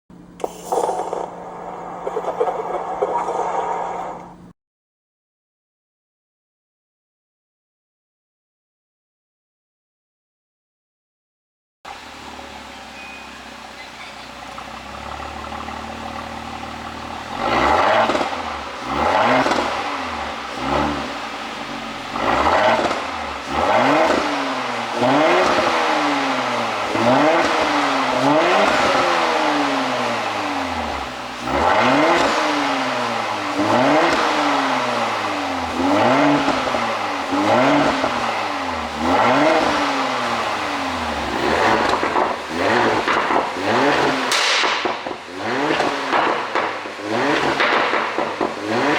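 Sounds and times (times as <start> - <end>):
car engine idling and revving: 0.1 - 4.5, 11.9 - 48.9
exhaust pops and crackles: 14.5 - 21.0, 22.1 - 25.8, 41.2 - 48.9.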